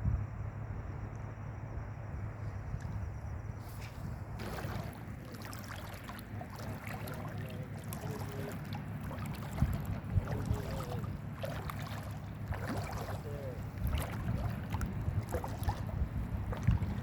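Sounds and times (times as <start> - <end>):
low rumble of sea: 0.0 - 17.0
footsteps sloshing through water: 3.6 - 17.0.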